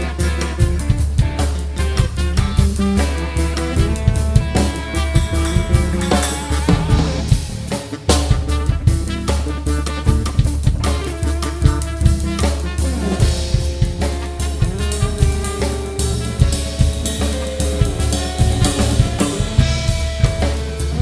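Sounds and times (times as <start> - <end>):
band music: 0.0 - 21.0
drum kit playing: 0.0 - 21.0.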